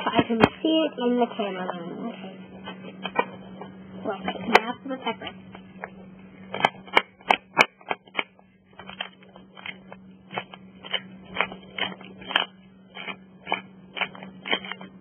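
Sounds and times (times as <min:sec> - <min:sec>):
steady low hum: 0:00.0 - 0:15.0
pepper grinder crunching clicks: 0:06.5 - 0:15.0.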